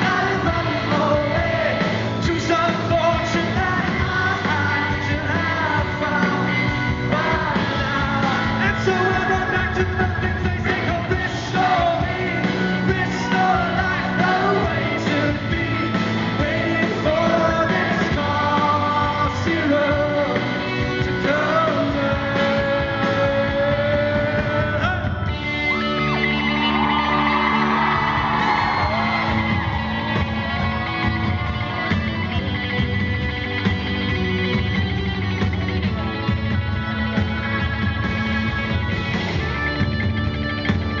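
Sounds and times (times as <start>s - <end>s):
man singing: 0.0s - 25.4s
live rock song: 0.0s - 41.0s.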